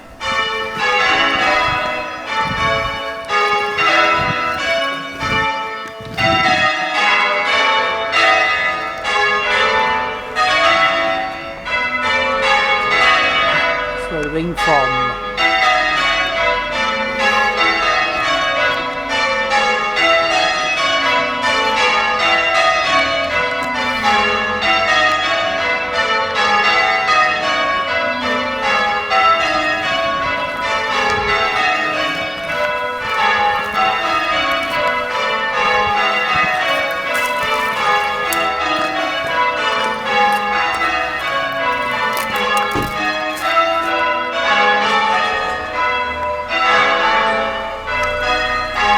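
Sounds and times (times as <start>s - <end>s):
church bells ringing: 0.0s - 48.9s.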